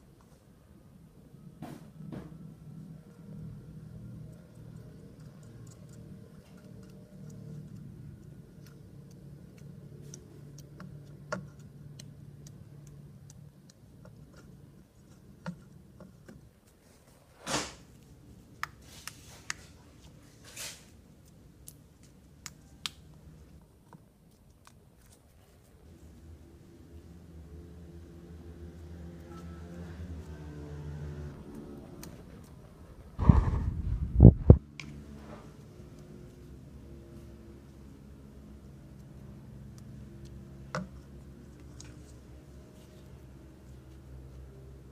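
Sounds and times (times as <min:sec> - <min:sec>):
low steady hum: 0:17.8 - 0:44.9.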